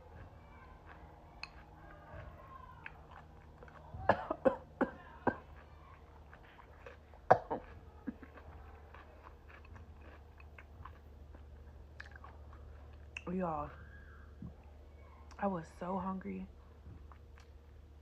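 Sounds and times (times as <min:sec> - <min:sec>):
chewing: 0:00.0 - 0:15.4, 0:16.6 - 0:17.9
crisp crunching bites: 0:05.4 - 0:13.2.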